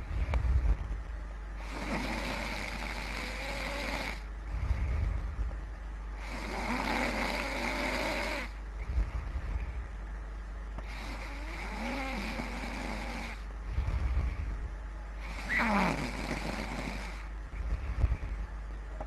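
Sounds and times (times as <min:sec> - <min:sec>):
noisy breathing: 0:00.0 - 0:00.9, 0:01.5 - 0:10.0, 0:10.8 - 0:18.6
person snoring heavily: 0:01.6 - 0:05.2, 0:06.2 - 0:08.6, 0:10.8 - 0:14.6, 0:15.2 - 0:17.3.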